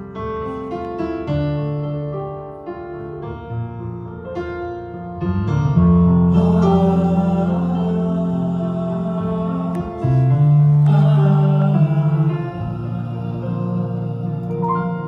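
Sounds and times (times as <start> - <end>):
piano chords: 0.0 - 15.0
gospel band playing: 6.3 - 15.0.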